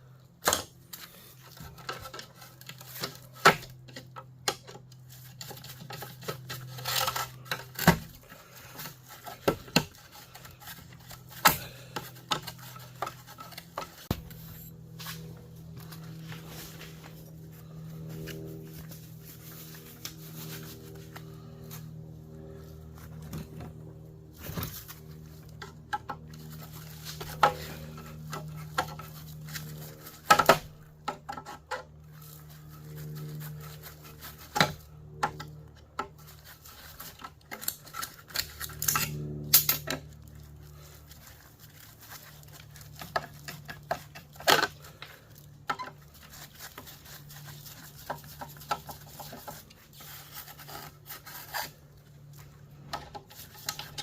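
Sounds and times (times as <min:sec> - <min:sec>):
low hum: 0:00.0 - 0:54.0.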